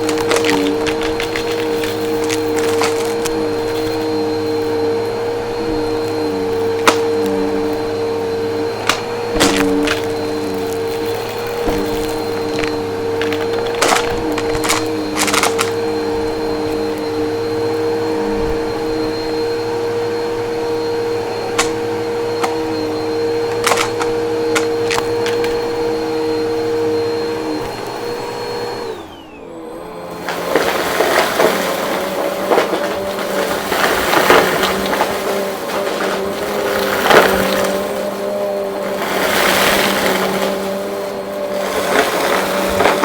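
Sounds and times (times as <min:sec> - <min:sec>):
crunchy debris crackling: 0:00.0 - 0:17.1, 0:21.4 - 0:25.8, 0:30.2 - 0:43.0
debris clicking in vacuum: 0:00.0 - 0:17.8, 0:20.8 - 0:29.1, 0:30.0 - 0:43.0
vacuum cleaner motor whining: 0:00.0 - 0:43.0
vacuum motor winding down: 0:00.0 - 0:43.0.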